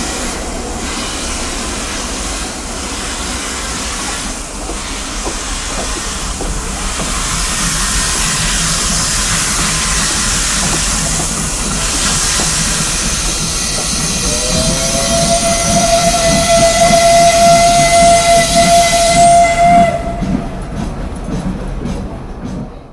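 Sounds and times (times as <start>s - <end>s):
locomotive venting steam: 0.0s - 22.4s
steam whistle blast: 13.6s - 20.4s.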